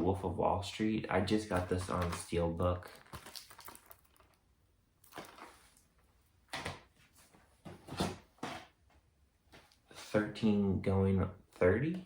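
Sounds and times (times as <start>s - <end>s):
plastic cases scuffing and knocking: 6.5s - 8.8s.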